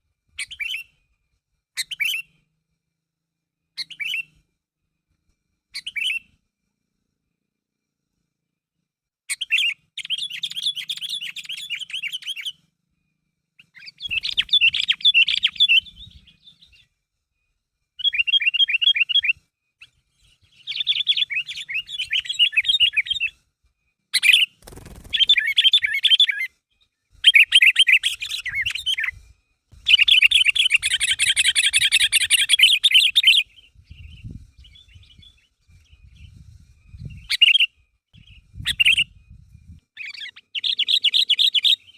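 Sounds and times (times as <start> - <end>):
bird chattering song: 9.3 - 12.6, 13.6 - 16.8, 18.0 - 23.3, 24.2 - 26.5, 27.2 - 29.1, 29.8 - 39.1, 40.0 - 41.9.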